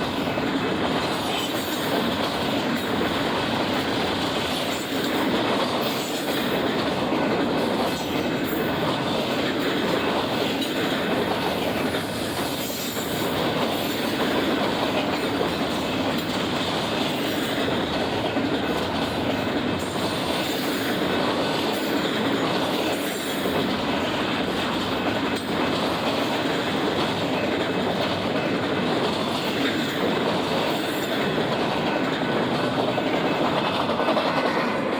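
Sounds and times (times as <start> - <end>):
steel wheels rolling on rail: 0.0 - 34.9
wheels clicking over rail joints: 0.0 - 34.9.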